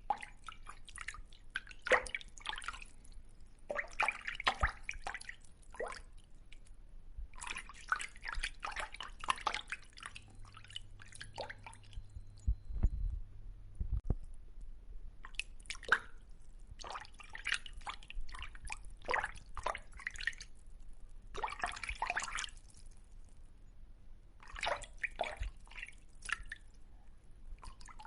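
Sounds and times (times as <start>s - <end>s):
water dripping and popping: 0.0s - 13.1s, 13.9s - 23.4s, 24.4s - 26.9s, 27.6s - 28.0s
low thumps: 12.1s - 14.2s.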